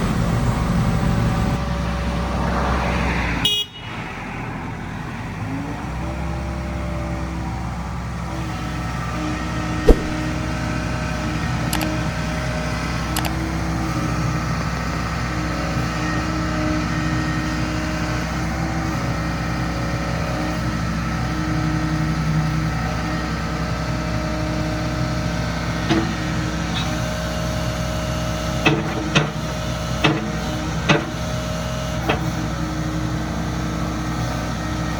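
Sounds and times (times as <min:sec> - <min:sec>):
sharp knock: 0:09.9 - 0:10.2.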